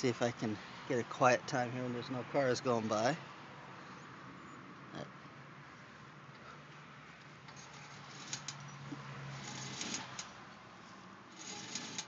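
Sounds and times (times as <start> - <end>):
faint clicks and rattle: 7.5 - 8.6, 9.4 - 10.4, 11.3 - 12.0.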